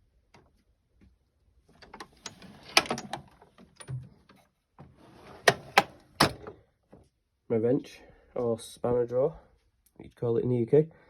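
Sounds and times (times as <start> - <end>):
steel drawers sliding: 1.8 - 3.9, 4.8 - 6.6.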